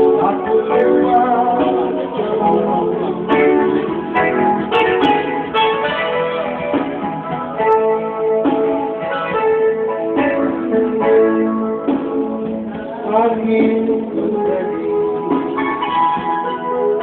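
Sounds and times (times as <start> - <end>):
plucked guitar music: 0.0 - 17.0.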